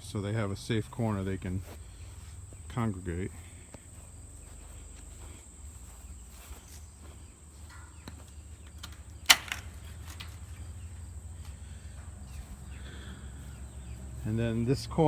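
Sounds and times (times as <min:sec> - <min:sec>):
crickets droning: 0:00.0 - 0:15.0.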